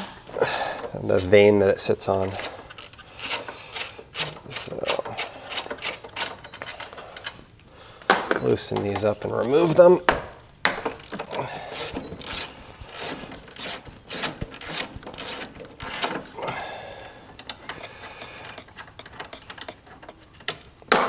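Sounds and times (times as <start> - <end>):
socket ratchet clicking: 2.1 - 7.4, 10.9 - 16.4.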